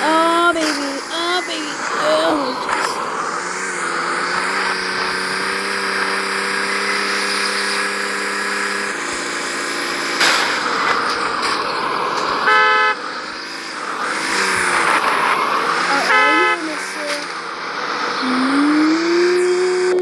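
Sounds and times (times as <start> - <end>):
video game vehicle engine: 0.0 - 20.0
car horn blast: 12.4 - 13.2, 15.9 - 17.3.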